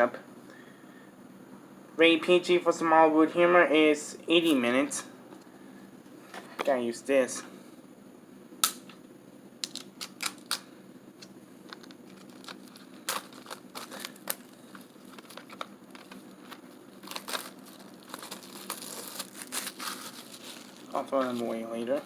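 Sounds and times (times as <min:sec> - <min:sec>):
plastic shrink-wrap tearing: 0:11.7 - 0:22.0.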